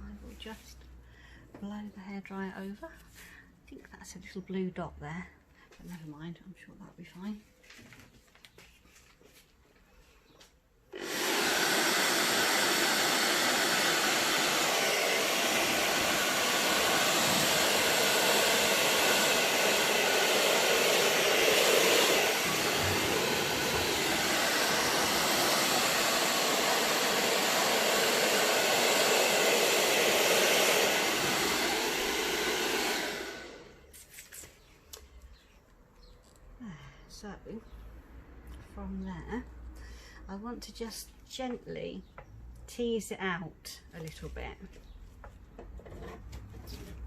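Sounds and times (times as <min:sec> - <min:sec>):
hair dryer blowing: 0:10.9 - 0:33.9.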